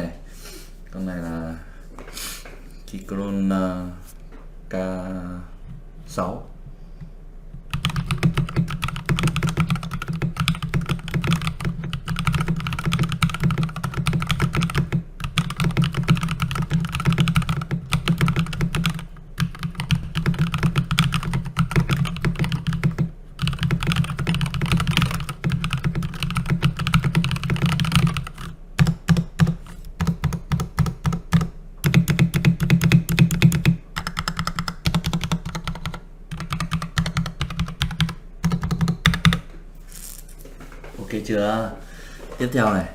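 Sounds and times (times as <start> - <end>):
mechanical keyboard typing: 7.7 - 39.4.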